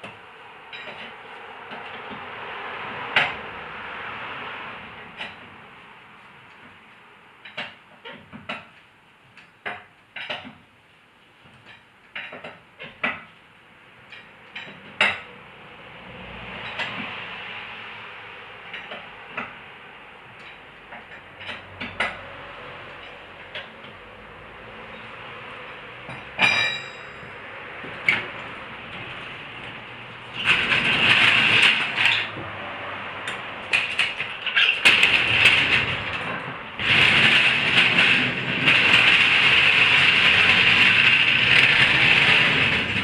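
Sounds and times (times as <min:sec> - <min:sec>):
metallic clinks of tools: 0:26.3 - 0:27.3.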